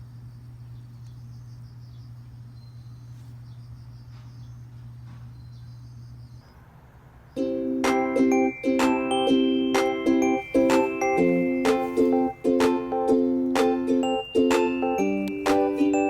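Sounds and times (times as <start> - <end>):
insects chirping in trills: 0.0 - 6.6
steady low hum: 0.0 - 16.0
music with chiming notes: 7.4 - 16.0.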